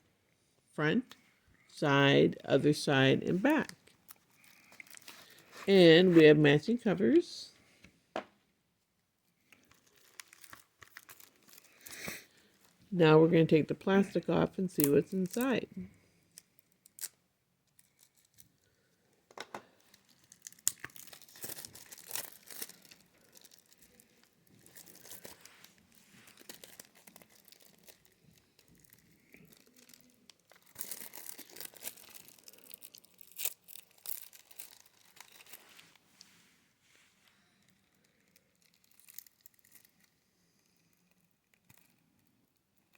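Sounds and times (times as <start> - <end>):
plastic wrap crinkling and tearing: 3.6 - 5.7, 9.4 - 12.8, 16.2 - 18.8, 19.6 - 36.2, 37.3 - 42.9.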